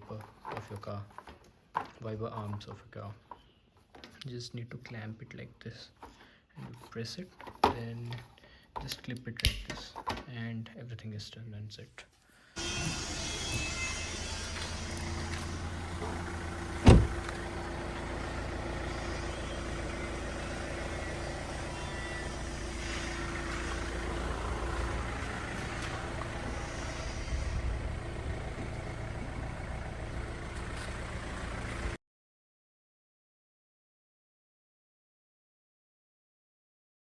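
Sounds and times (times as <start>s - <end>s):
car engine running: 12.6s - 32.0s.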